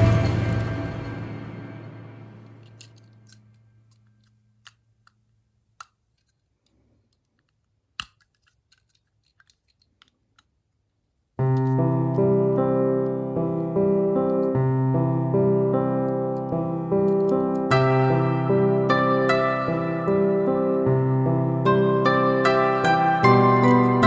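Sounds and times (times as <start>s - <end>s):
background music: 0.0s - 3.3s, 11.6s - 24.0s
piano music: 0.0s - 3.3s, 11.4s - 24.0s.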